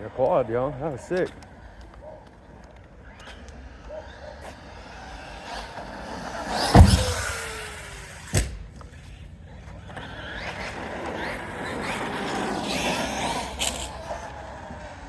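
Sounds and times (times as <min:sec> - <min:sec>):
toy truck motor whining: 0:00.0 - 0:15.0
sharp knock: 0:06.7 - 0:07.4.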